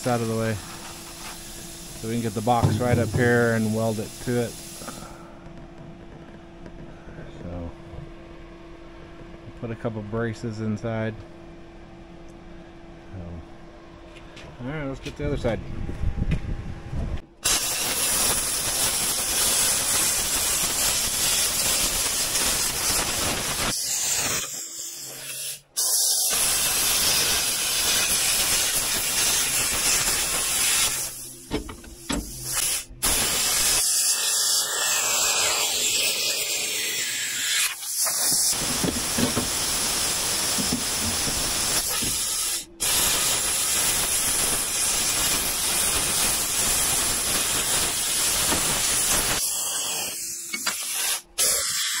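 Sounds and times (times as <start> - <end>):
plasma cutter hissing: 0.0 - 5.2, 17.4 - 52.0.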